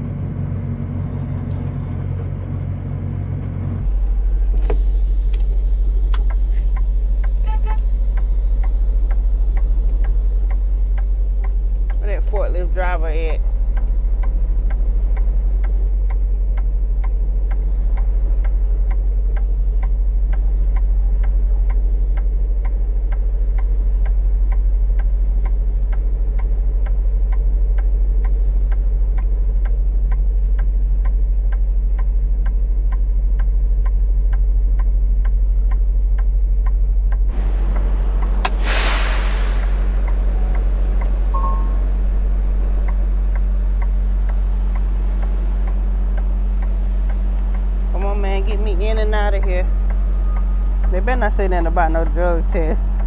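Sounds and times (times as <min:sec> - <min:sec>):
truck engine idling: 0:00.0 - 0:53.0
regular ticking: 0:04.4 - 0:38.7, 0:42.0 - 0:53.0
rush of noise: 0:37.3 - 0:41.1.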